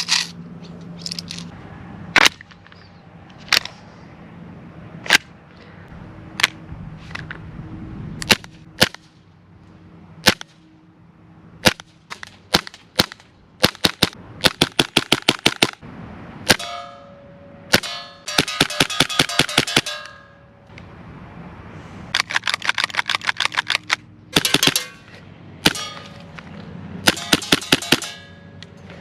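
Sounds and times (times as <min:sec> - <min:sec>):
ringing metallic clang: 0:16.5 - 0:20.7, 0:24.4 - 0:26.4, 0:27.1 - 0:28.8.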